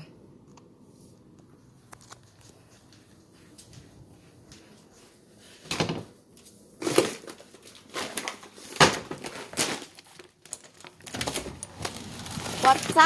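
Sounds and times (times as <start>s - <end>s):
crackling rustling knocks: 6.8s - 13.0s.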